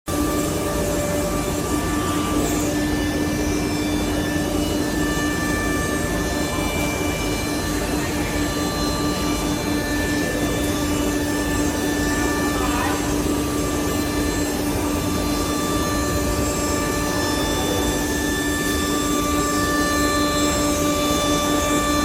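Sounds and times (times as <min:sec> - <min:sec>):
router machine whine: 0:00.1 - 0:22.0.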